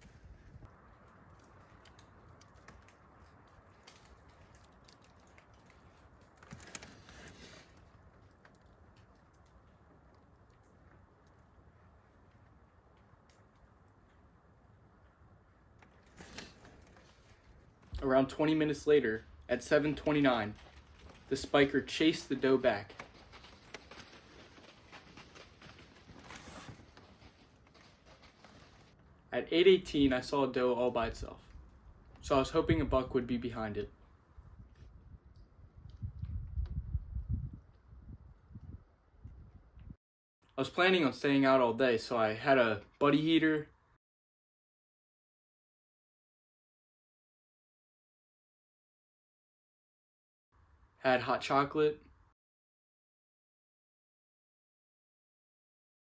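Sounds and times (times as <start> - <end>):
soft rustle: 18.9 - 29.0.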